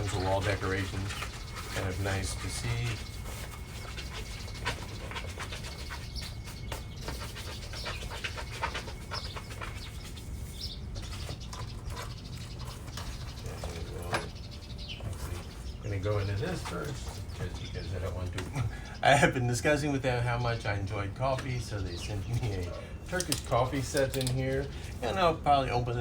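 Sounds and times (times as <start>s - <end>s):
dog panting: 6.8s - 10.0s.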